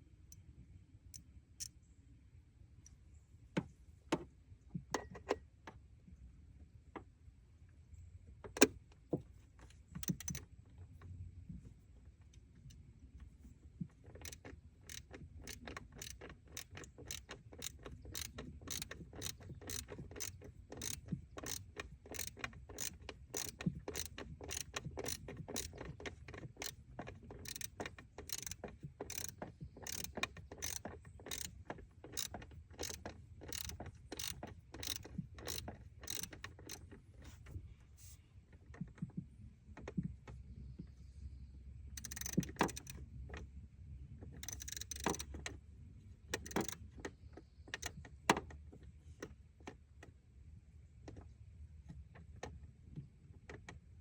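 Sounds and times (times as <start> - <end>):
ratchet wrench clicking: 10.0 - 10.4, 14.1 - 36.9, 42.0 - 43.0, 44.4 - 45.4, 46.4 - 46.8.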